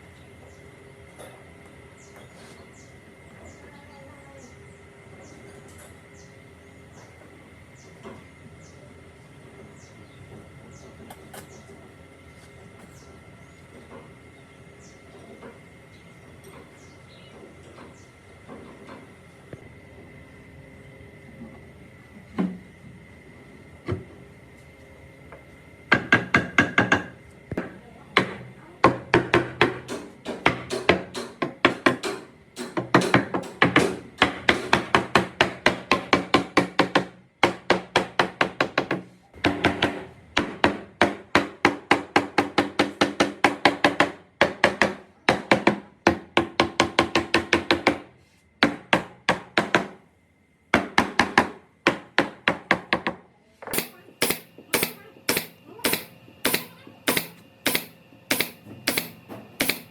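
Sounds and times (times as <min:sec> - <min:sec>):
hammer striking ringing metal: 0:53.8 - 0:59.9.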